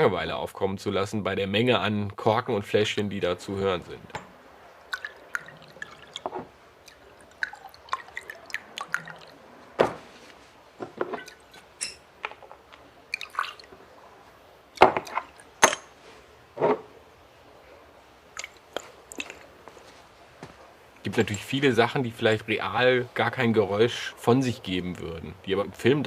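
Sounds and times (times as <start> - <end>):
glass bottles clinking: 10.8 - 12.5.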